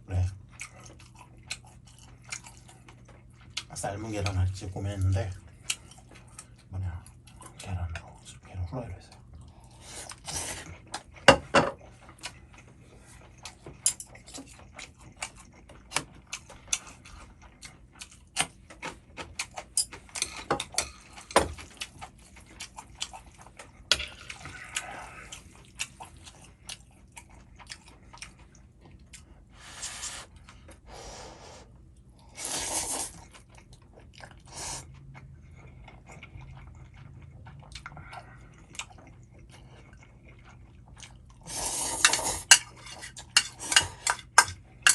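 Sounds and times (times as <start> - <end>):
chewing: 0.2 - 30.9, 31.7 - 44.9
slurping noodles: 32.3 - 33.2, 41.4 - 42.5
utensils clicking on bowl: 41.9 - 44.9.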